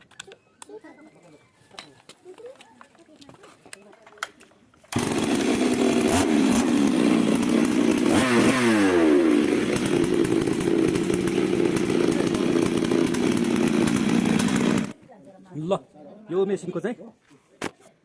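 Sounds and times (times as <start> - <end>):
chainsaw engine running: 4.9 - 15.0.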